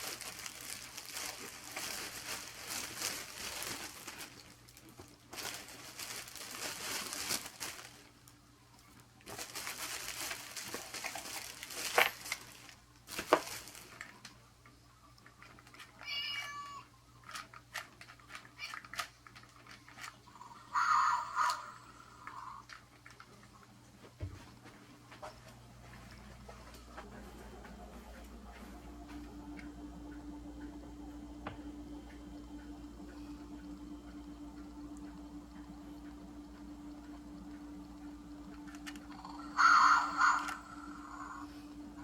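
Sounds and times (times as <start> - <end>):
wrapping paper crinkling: 0.0 - 16.6, 17.2 - 20.2, 38.2 - 41.0
cat meowing: 16.0 - 16.9.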